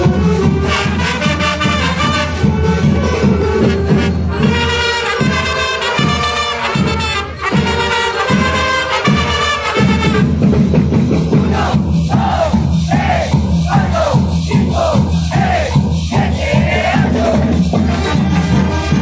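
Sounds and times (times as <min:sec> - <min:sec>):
brass band playing: 0:00.0 - 0:19.0
crowd shouting and cheering: 0:11.3 - 0:19.0.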